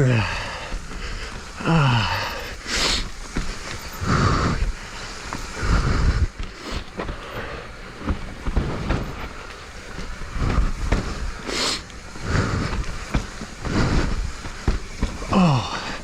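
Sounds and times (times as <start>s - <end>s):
bike chain and frame rattling: 0.0s - 16.0s
bike tyres rumbling over rocks: 0.0s - 16.0s
short hiss: 0.1s - 16.0s
sharp knocks from bumps: 6.3s - 11.3s.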